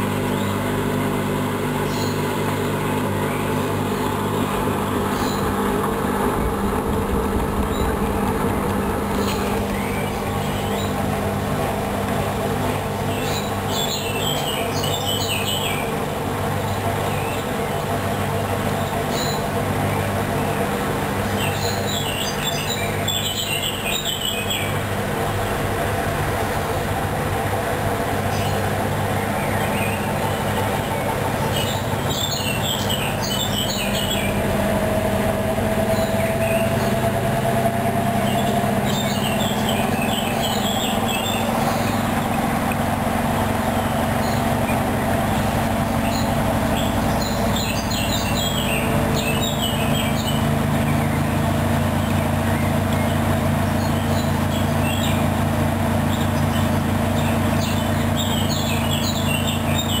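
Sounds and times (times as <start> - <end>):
washing machine humming: 0.0 - 60.0
bird chirps: 1.8 - 5.6, 13.1 - 15.9, 21.3 - 24.8, 29.3 - 34.5, 38.2 - 51.3, 52.0 - 55.3, 56.1 - 60.0.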